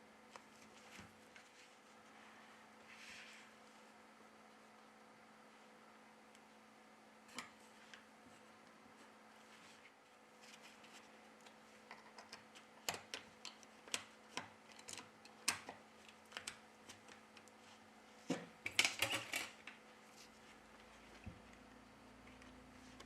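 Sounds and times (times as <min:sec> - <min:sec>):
small clicks and taps of tools: 0:11.4 - 0:17.6.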